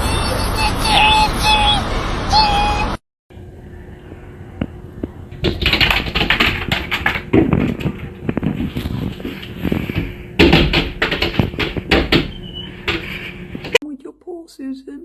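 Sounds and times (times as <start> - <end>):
rapid irregular tapping and clattering: 5.3 - 13.8.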